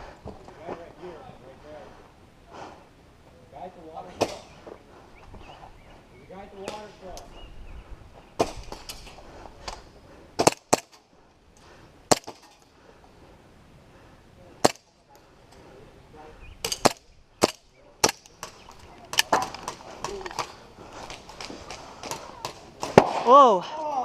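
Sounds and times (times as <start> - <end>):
airsoft guns firing: 12.1 - 12.5, 16.7 - 23.5.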